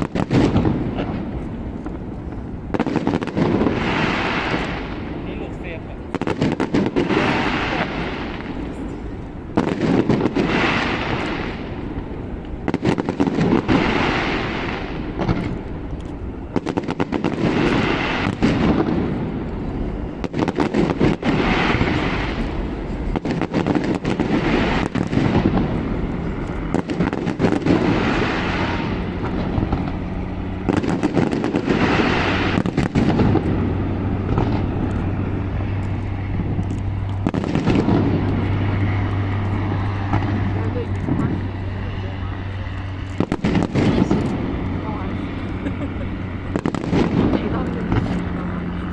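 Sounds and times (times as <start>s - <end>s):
fireworks bangs: 0.0s - 48.9s
fireworks crackle: 0.0s - 48.9s
low steady hum: 21.8s - 48.9s.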